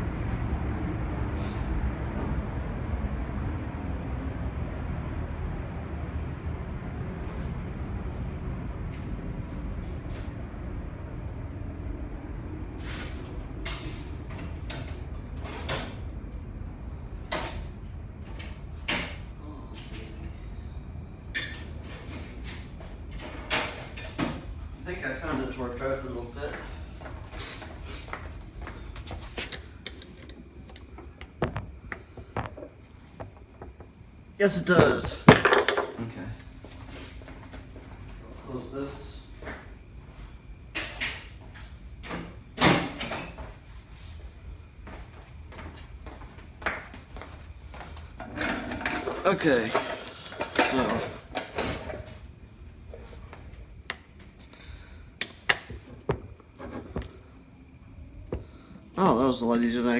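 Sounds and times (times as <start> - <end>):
steady low hum: 0.0 - 59.9
tools knocking and clicking: 29.5 - 31.6.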